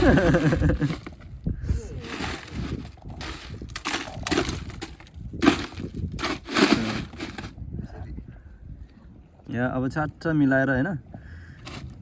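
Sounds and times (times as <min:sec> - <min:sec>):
ice crunching and clinking: 0:00.0 - 0:01.2, 0:01.9 - 0:07.6, 0:11.6 - 0:12.0.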